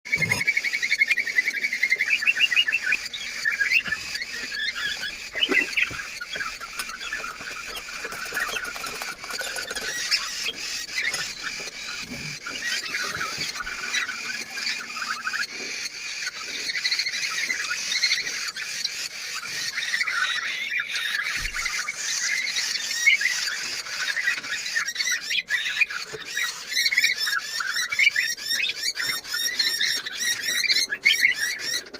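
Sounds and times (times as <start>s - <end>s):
parrot chicks chirping and squealing: 0.1s - 31.9s.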